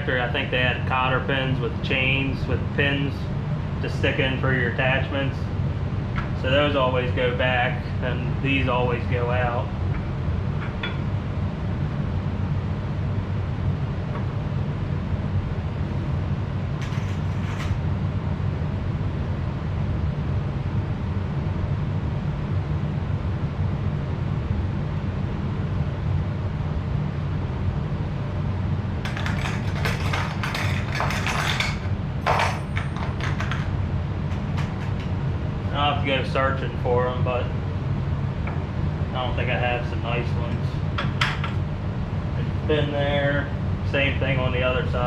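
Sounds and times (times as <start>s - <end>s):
steady low rumble: 0.0s - 45.0s
metal parts clinking and rattling: 16.8s - 17.8s, 29.1s - 35.1s.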